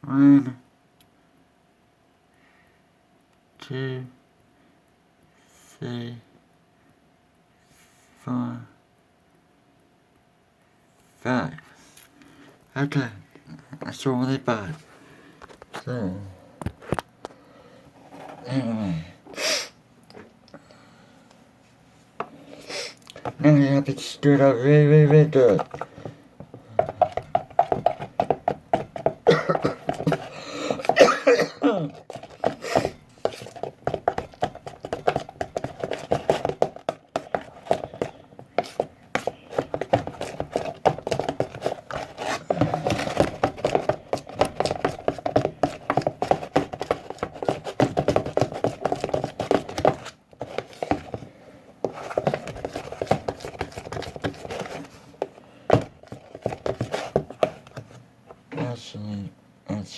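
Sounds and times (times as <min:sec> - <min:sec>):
utensil scraping slime in bowl: 0:23.2 - 0:31.0, 0:31.9 - 0:57.9.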